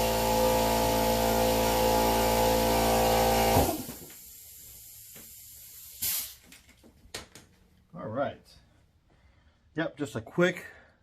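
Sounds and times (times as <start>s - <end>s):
motor whining and winding down: 0.0s - 4.1s.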